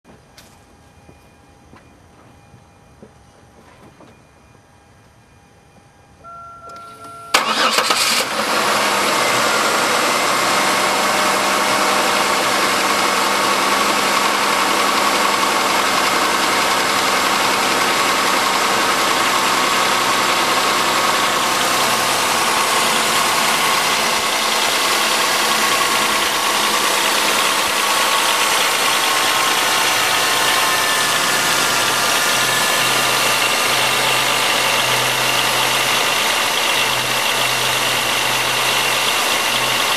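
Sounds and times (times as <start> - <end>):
brief steady tone: 0.3 - 7.4
car engine starting and idling: 6.2 - 39.9.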